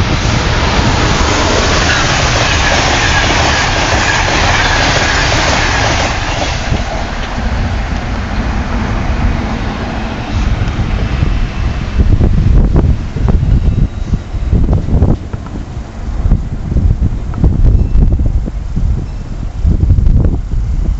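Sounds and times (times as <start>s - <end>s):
train clatter: 0.0s - 13.9s
train wheels rushing on rail: 0.0s - 20.9s.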